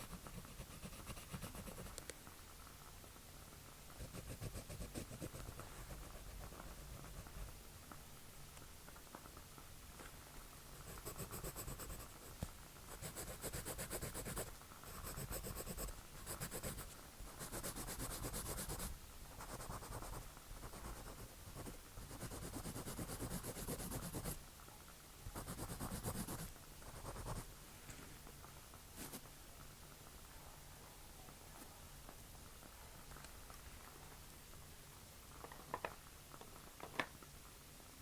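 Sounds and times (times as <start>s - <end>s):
pencil scratching on paper: 0.0s - 2.0s, 4.0s - 7.4s, 10.8s - 12.3s, 12.9s - 24.4s, 25.4s - 27.4s.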